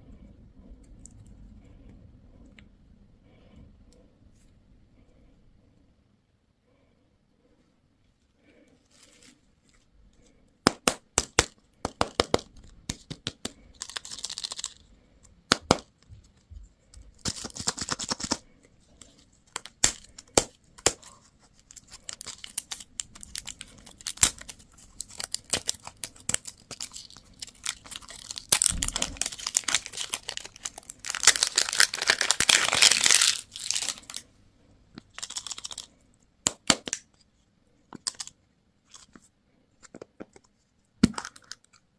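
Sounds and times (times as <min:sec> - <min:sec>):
packaging torn and crinkled: 0:13.7 - 0:14.8, 0:19.5 - 0:34.2, 0:35.1 - 0:35.9.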